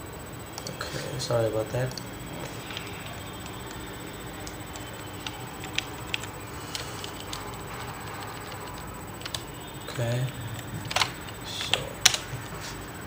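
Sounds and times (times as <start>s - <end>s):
low room hum: 0.0s - 13.0s
computer clicks: 0.4s - 12.8s.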